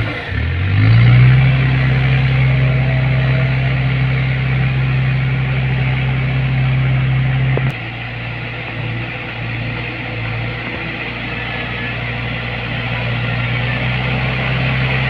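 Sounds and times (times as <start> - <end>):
diesel engine droning: 0.0 - 15.0
click: 7.5 - 7.8.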